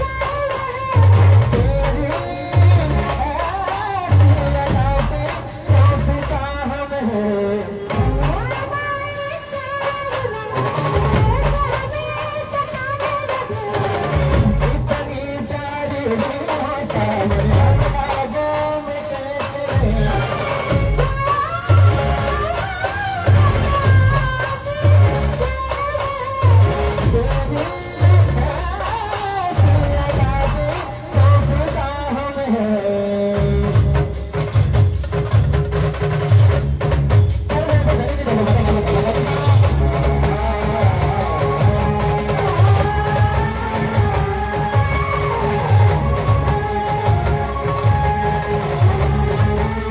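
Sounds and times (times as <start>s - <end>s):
heavy bass drum beats: 0.0s - 7.2s, 7.9s - 32.3s, 33.3s - 49.9s
brass band playing: 19.8s - 29.1s, 38.6s - 49.9s.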